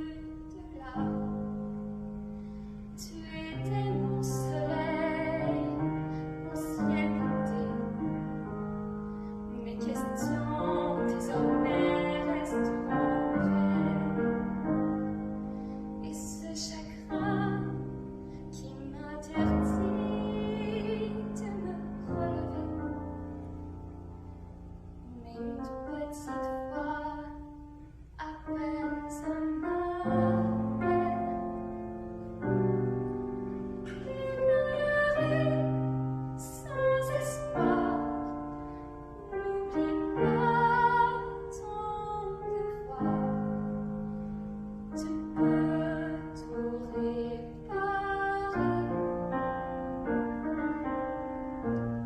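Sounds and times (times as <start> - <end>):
woman singing a slow ballad: 0.0 - 1.5, 3.0 - 8.6, 9.5 - 15.1, 16.0 - 17.9, 18.5 - 23.2, 25.1 - 27.6, 28.2 - 31.5, 33.9 - 38.5, 39.2 - 43.7, 45.0 - 49.0
piano chords: 0.0 - 52.0.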